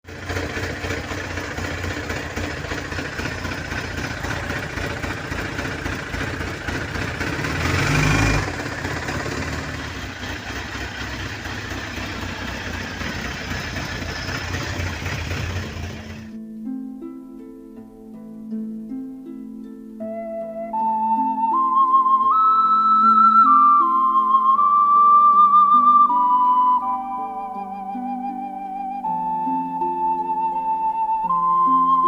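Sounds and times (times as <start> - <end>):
engine knocking: 0.0 - 16.4
engine revving: 0.0 - 16.4
motorcycle engine idling: 0.0 - 16.4.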